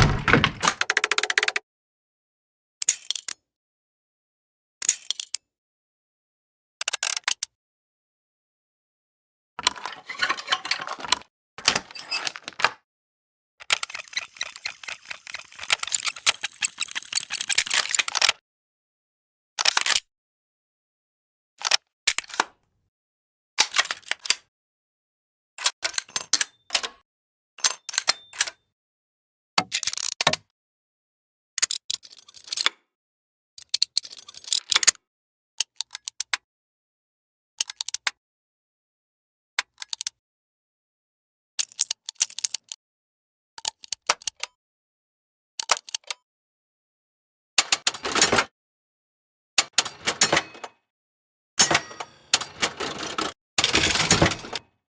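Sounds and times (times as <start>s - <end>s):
mechanical gears clicking and rattling: 0.0s - 1.6s, 47.8s - 48.5s, 49.7s - 50.7s, 51.6s - 54.6s
small gears clicking and clattering: 0.0s - 1.6s, 13.6s - 18.3s, 51.6s - 54.6s.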